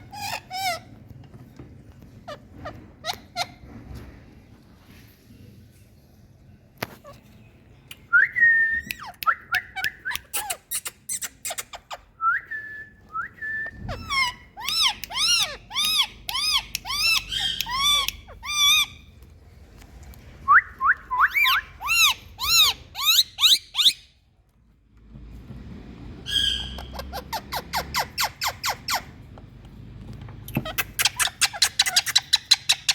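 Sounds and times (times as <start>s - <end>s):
parrot shrill calls: 13.9s - 19.0s, 21.2s - 24.1s, 26.3s - 29.1s.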